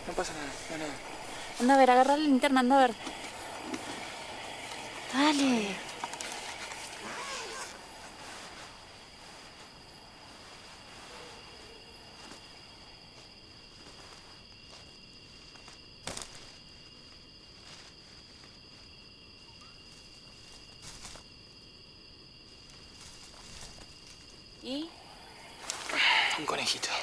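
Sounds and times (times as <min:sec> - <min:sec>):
footsteps crunching on forest floor: 0:00.0 - 0:15.0
crickets chirring: 0:00.0 - 0:27.0.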